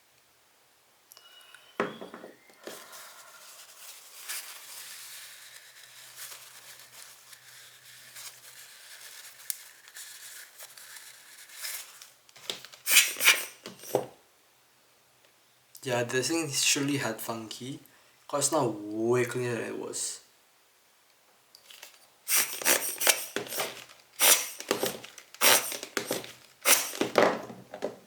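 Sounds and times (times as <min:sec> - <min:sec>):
knock: 0:01.8 - 0:02.4
rustling scrapes: 0:02.6 - 0:14.0
cloth rubbing lens glass: 0:12.8 - 0:14.0, 0:22.3 - 0:27.2.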